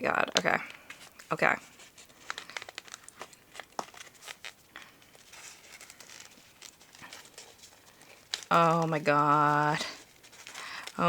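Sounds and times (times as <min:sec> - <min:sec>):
paper wrapper crinkling: 0:00.9 - 0:11.0.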